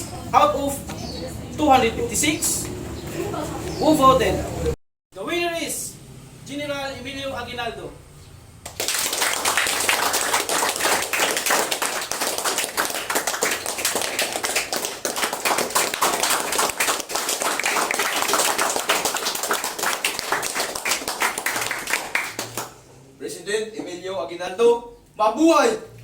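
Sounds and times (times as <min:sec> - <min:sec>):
people clapping: 0:08.6 - 0:22.8.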